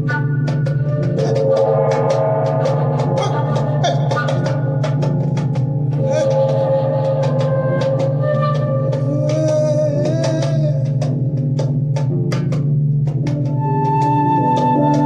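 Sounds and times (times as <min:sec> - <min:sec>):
held melodic note: 0:00.0 - 0:09.8
hand drums: 0:00.0 - 0:15.0.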